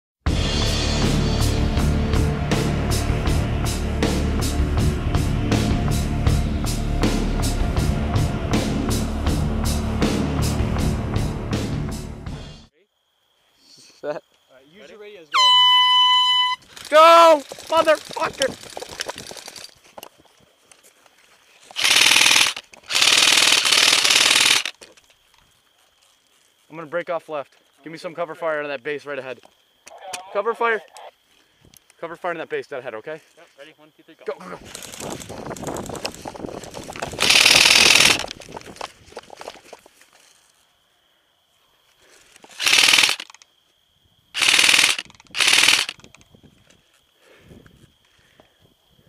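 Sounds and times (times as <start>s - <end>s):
airsoft rifle firing full auto: 21.8s - 24.7s, 37.2s - 38.3s, 42.5s - 43.4s, 44.4s - 46.0s.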